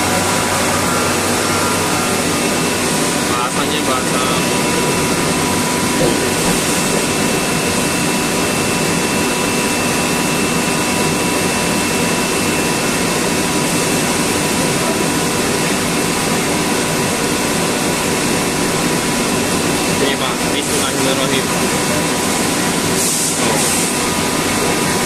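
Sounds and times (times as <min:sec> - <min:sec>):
air compressor running: 0:00.0 - 0:25.0.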